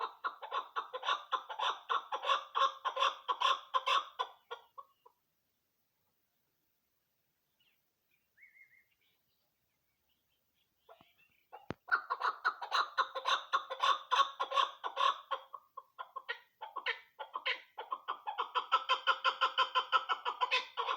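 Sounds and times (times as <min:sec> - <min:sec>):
partridge clucking calls: 0:00.0 - 0:05.2, 0:10.8 - 0:20.9.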